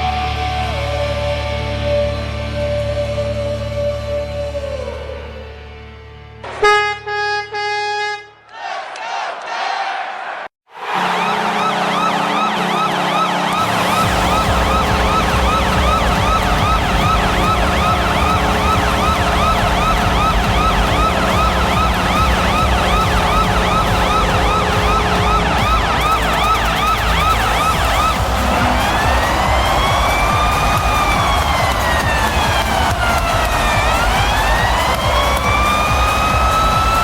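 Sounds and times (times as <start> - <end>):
electronic yelp siren: 10.8 - 37.0
pulsing bass beat: 11.4 - 37.0
steady low tone: 12.2 - 37.0.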